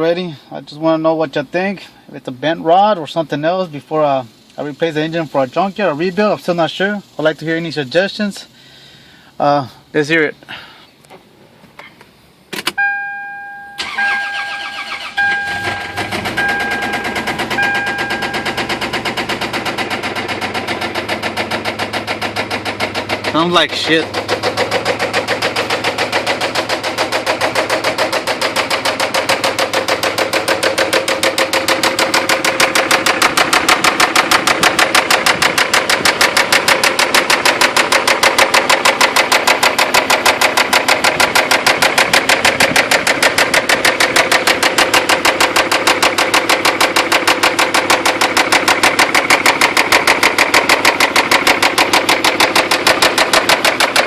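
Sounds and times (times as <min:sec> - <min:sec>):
engine knocking rapidly: 0:15.5 - 0:54.0.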